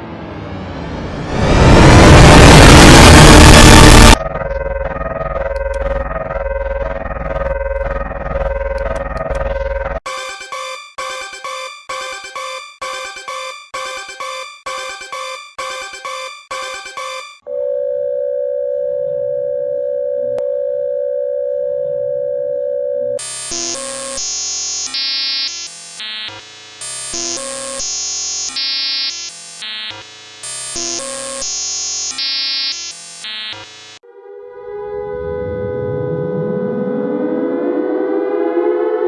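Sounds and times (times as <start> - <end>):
siren-like tone: 0.0 - 39.0
steady electronic alert tone: 0.1 - 17.4
synth melody and chords: 0.3 - 17.4.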